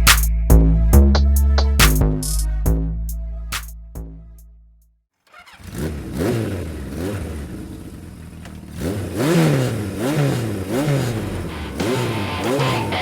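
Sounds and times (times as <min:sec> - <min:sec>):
motorcycle alarm siren wailing: 0:11.4 - 0:13.0.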